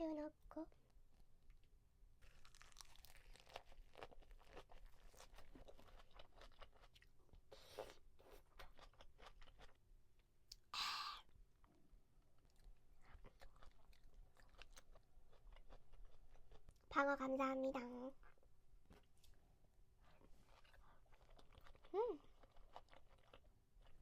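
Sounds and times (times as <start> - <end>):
person chewing wet food: 2.2 - 9.8, 12.4 - 16.9, 20.0 - 24.0.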